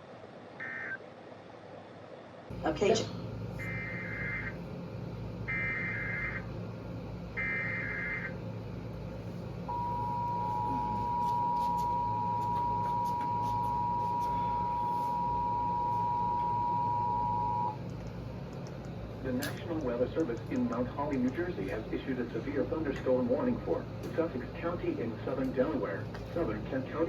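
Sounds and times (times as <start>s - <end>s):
two-tone attention signal: 9.7s - 17.8s.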